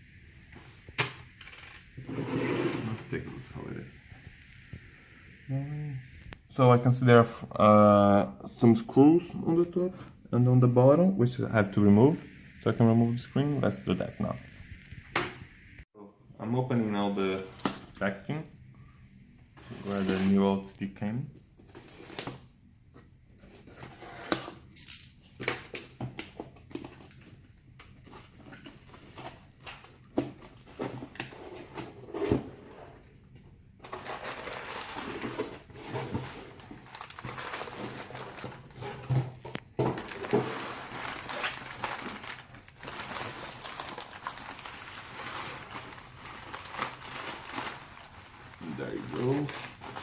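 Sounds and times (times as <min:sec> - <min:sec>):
plastic wrapping rustling: 0:33.8 - 0:50.0.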